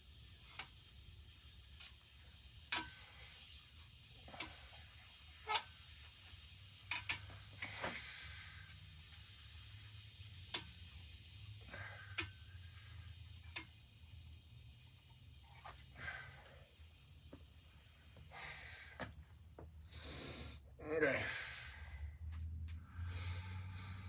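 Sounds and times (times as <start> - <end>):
light metallic clicks and taps: 6.9 - 7.7.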